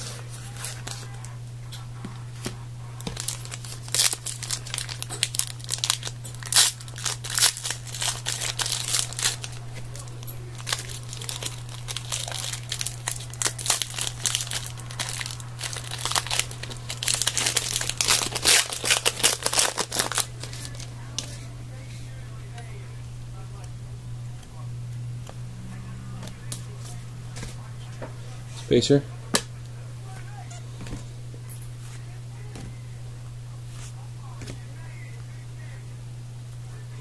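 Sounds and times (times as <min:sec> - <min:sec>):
card pack wrapper crinkling: 0:00.0 - 0:01.3, 0:02.4 - 0:21.4
low hum: 0:00.0 - 0:37.0.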